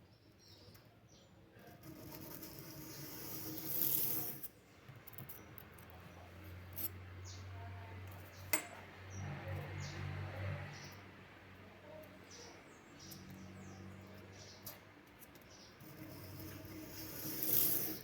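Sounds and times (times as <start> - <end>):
clipper blade scraping abrasive: 15.8 - 18.0.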